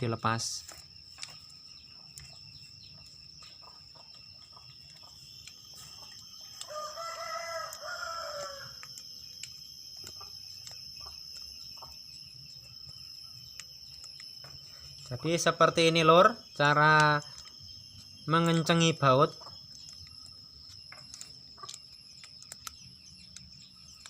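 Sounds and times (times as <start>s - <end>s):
crickets chirring: 0.0s - 24.0s
rooster crowing: 6.3s - 9.0s
wrench clicks and taps: 20.9s - 24.0s.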